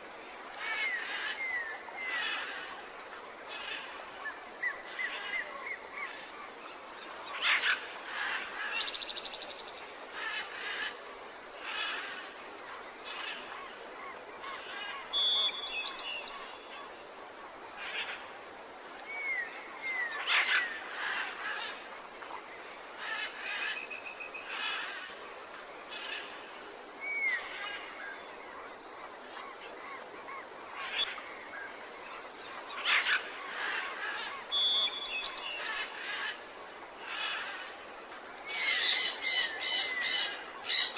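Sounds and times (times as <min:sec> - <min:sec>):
background hiss: 0:00.0 - 0:40.9
birds calling and chirping: 0:38.4 - 0:40.9.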